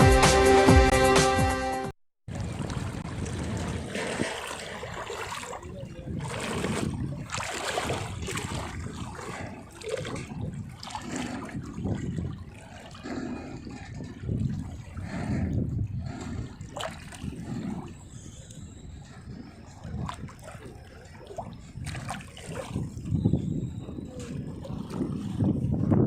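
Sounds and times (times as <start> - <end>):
music: 0.0 - 1.9
floodwater rushing and churning: 2.3 - 25.9.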